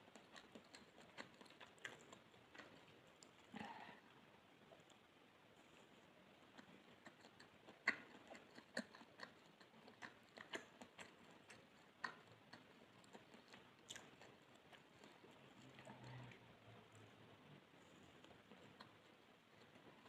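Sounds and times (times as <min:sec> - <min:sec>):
chewing soft cake: 0:00.0 - 0:20.0
wet mouth clicks: 0:06.6 - 0:14.3.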